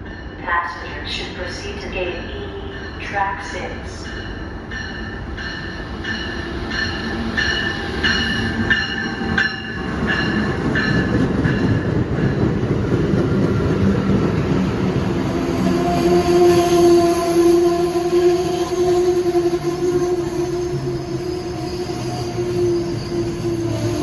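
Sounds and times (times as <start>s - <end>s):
train rumbling: 0.0s - 24.0s
locomotive bell ringing: 1.9s - 12.5s.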